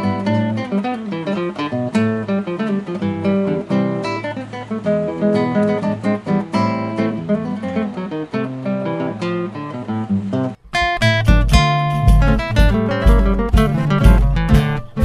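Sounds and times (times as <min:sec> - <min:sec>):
acoustic guitar music: 0:00.0 - 0:15.0.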